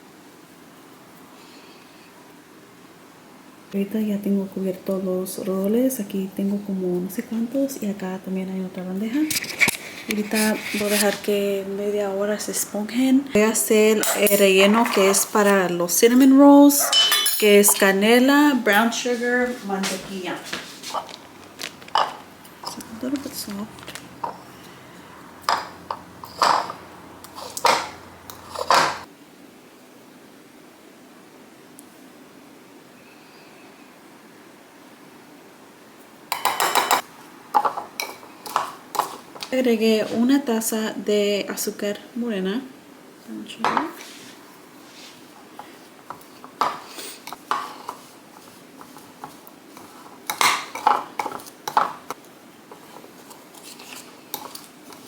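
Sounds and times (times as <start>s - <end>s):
utensil scraping in a bowl: 9.1s - 11.7s, 16.7s - 29.1s, 43.9s - 55.0s
utensils clinking against dishes: 13.8s - 15.4s, 16.8s - 18.1s, 20.8s - 29.1s, 36.3s - 39.2s.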